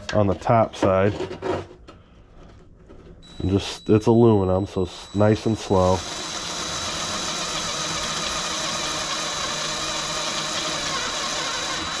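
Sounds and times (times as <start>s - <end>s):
power drill cutting aluminium: 5.6s - 12.0s.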